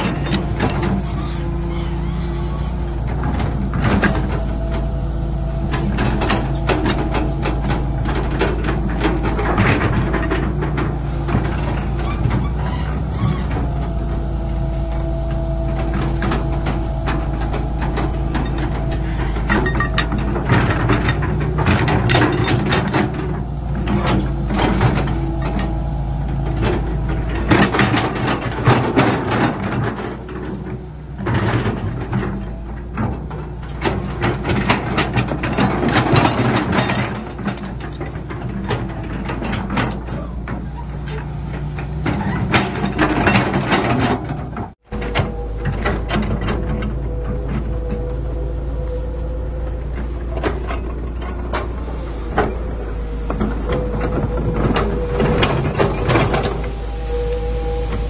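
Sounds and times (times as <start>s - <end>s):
excavator engine running: 0.0s - 58.0s
machine clanks and knocks: 0.0s - 58.0s
faint steady whine: 45.0s - 58.0s.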